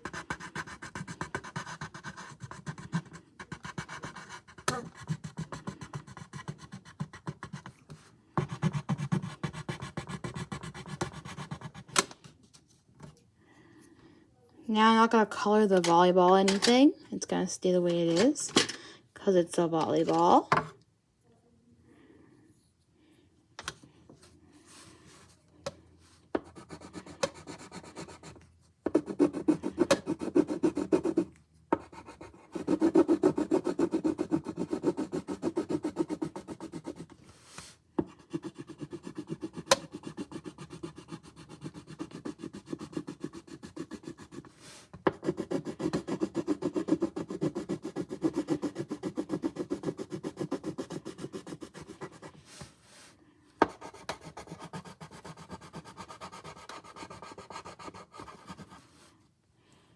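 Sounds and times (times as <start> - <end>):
coloring tool scribbling on paper: 0.0 - 7.8, 8.4 - 12.0, 26.4 - 37.1, 38.1 - 52.6, 53.6 - 58.9.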